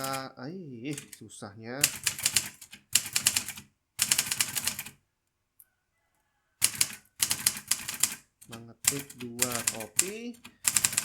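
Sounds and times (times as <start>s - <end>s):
manual typewriter keys striking: 0.0s - 0.3s, 0.9s - 1.2s, 1.8s - 4.9s, 6.6s - 11.0s.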